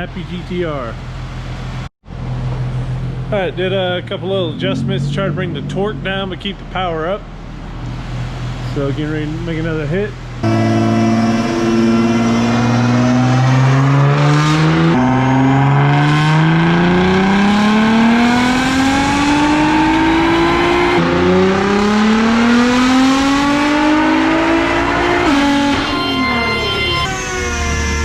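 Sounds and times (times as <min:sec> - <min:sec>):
car engine revving on a dyno: 0:10.4 - 0:28.0.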